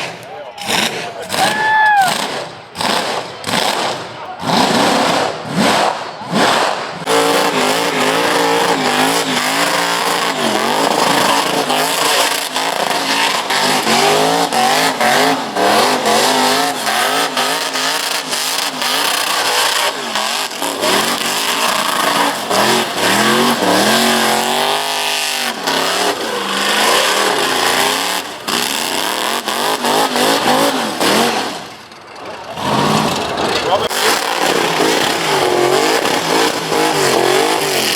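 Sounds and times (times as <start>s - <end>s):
car engine revving hard: 0.0s - 31.8s, 32.5s - 37.9s
tyres spinning on tarmac: 8.7s - 37.9s.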